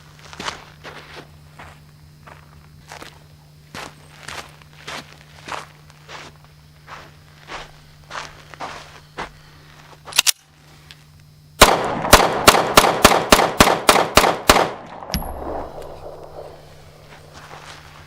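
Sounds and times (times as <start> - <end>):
pistol shots echoing: 11.6 - 17.4.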